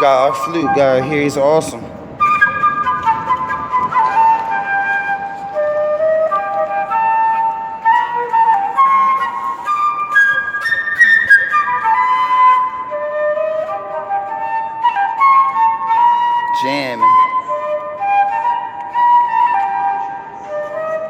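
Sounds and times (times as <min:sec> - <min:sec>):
solo flute melody: 0:00.0 - 0:21.0.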